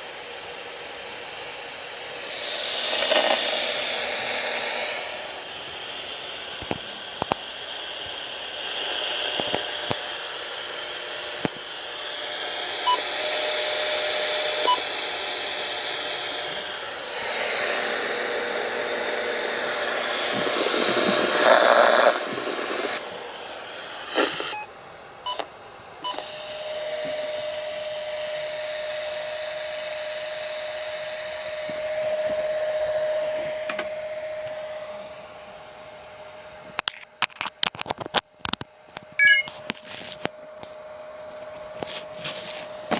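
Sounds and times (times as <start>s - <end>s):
radio static hiss: 0.8s - 42.9s
sharp clicks and crackles: 6.6s - 8.2s, 9.3s - 10.1s, 36.8s - 42.0s.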